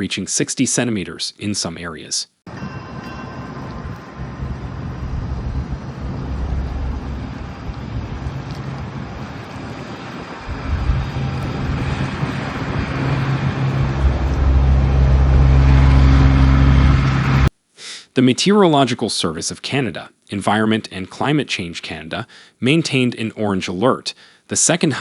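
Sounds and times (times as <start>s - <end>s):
vehicle engine humming: 2.5s - 17.5s
wind or traffic noise: 2.5s - 17.5s.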